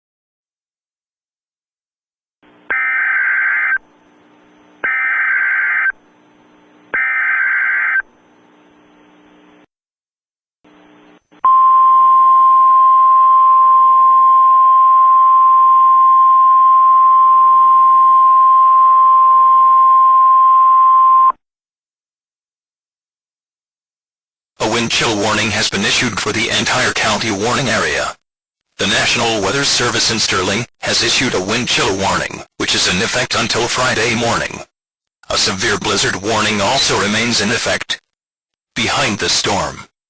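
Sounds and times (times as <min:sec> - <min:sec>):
steady alarm tone: 0:04.8 - 0:06.0, 0:07.0 - 0:08.1.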